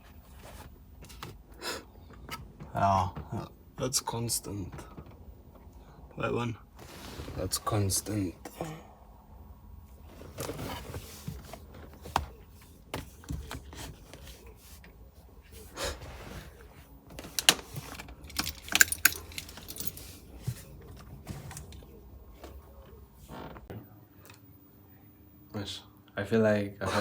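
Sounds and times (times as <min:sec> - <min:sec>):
metallic clinks and rattles of tools: 0:17.4 - 0:20.3.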